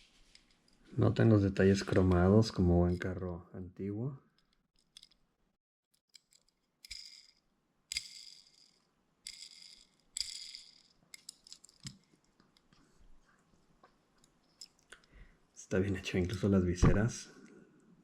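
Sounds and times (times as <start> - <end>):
toy car rattling scrapes: 6.1 - 11.9.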